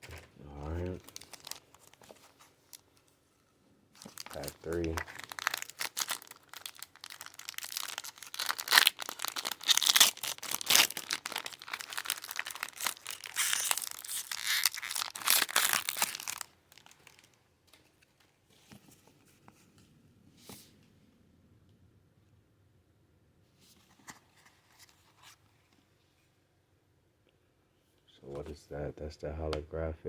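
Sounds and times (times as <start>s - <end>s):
foil wrapper tearing and crinkling: 1.0s - 2.0s, 4.0s - 17.3s.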